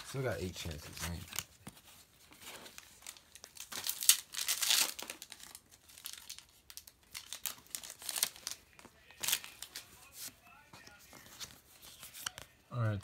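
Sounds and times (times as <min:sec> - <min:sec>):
foil wrapper crinkling and tearing: 0:02.6 - 0:09.8.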